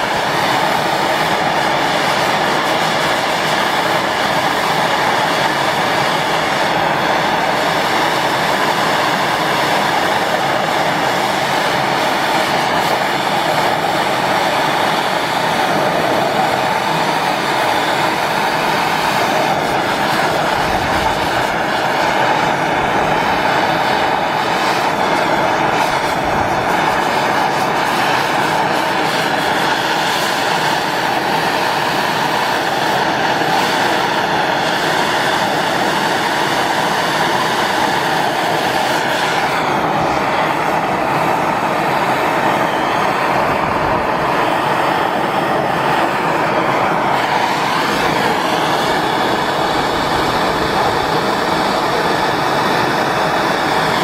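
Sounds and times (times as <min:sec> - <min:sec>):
gas torch hissing: 0:00.0 - 0:54.0.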